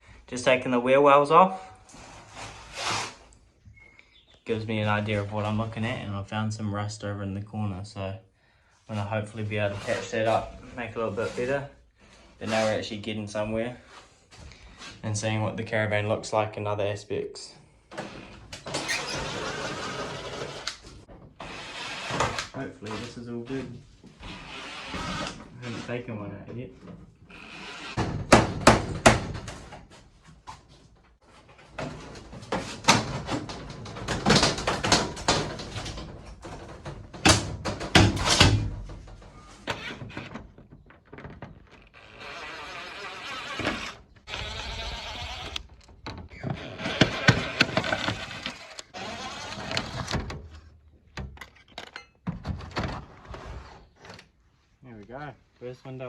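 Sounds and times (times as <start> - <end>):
scraping and grinding: 39.3 - 50.7.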